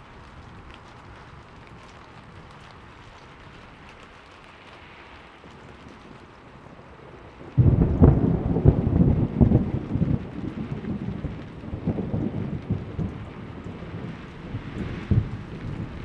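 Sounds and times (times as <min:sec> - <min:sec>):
steady rain falling: 0:00.0 - 0:16.0
thunder clap rumbling: 0:07.4 - 0:16.0.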